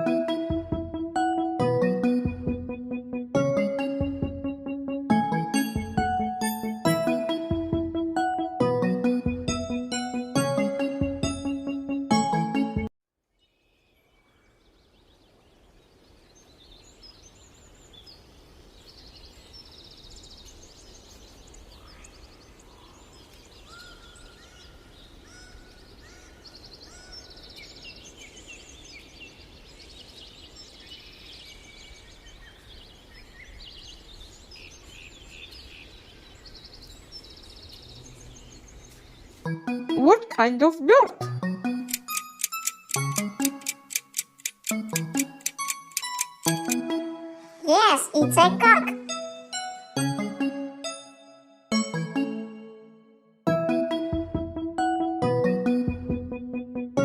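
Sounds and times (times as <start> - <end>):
small birds chirping and trilling: 13.3 - 39.6, 42.0 - 46.8.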